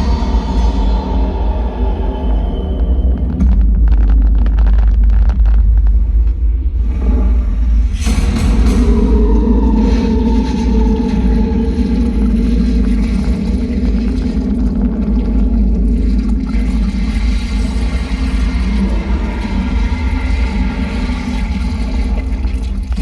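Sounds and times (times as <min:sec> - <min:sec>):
low droning soundtrack music: 0:00.0 - 0:23.0.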